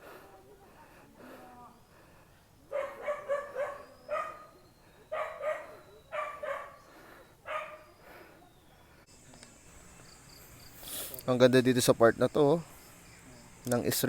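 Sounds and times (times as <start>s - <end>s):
dog barking: 2.7s - 8.0s.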